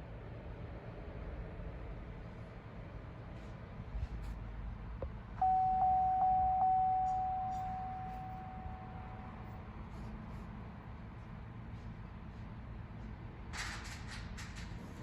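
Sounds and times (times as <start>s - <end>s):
electronic chime dinging: 5.4s - 9.4s.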